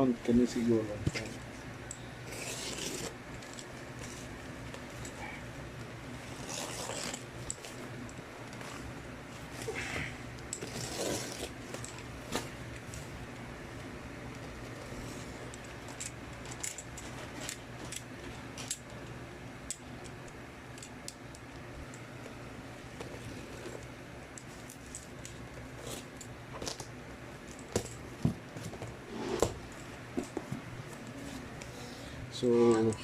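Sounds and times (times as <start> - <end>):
steady low hum: 0.0 - 33.0
cardboard packaging scrapes and clicks: 2.3 - 3.2, 10.6 - 12.6.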